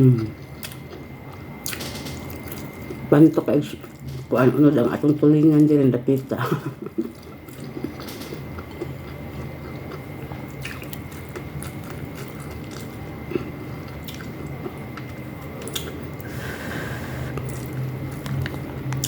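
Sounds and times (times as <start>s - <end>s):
steady low hum: 0.0s - 19.0s
person chewing: 0.2s - 3.0s, 7.0s - 18.6s
faint high whine: 12.4s - 19.0s.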